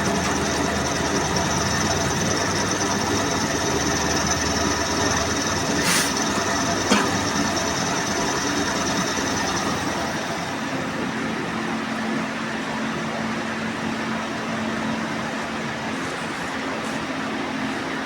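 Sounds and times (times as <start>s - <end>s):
milling machine machining: 0.0s - 11.0s
high whine: 0.0s - 11.6s
steady low hum: 0.0s - 12.2s.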